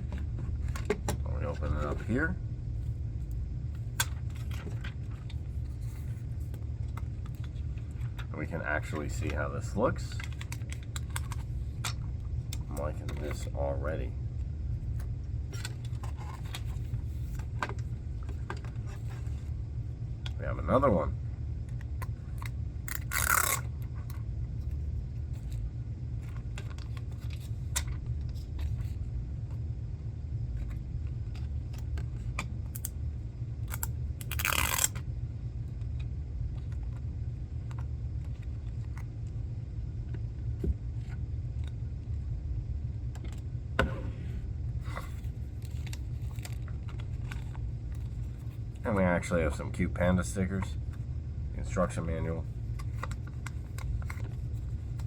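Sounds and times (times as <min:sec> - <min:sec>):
steady low hum: 0:00.0 - 0:55.0
packaging scrapes and clicks: 0:22.9 - 0:23.7, 0:33.7 - 0:35.0
packaging rustling: 0:33.7 - 0:35.0.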